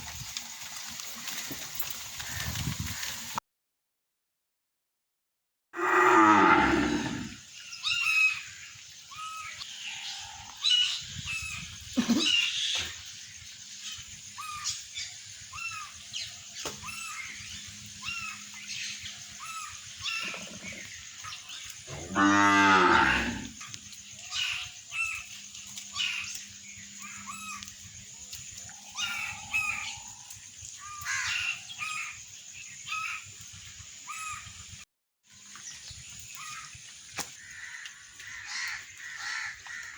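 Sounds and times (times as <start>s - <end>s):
cattle mooing: 5.8s - 7.4s, 21.9s - 23.6s
small birds chirping: 6.8s - 39.9s.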